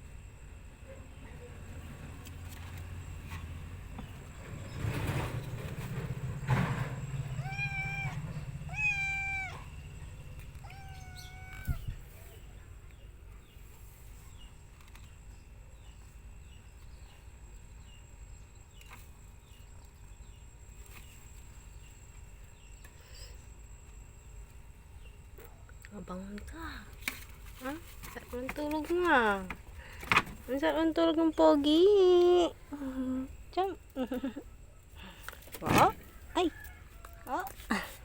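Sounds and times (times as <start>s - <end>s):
cat meowing: 7.3s - 9.8s, 10.5s - 12.0s.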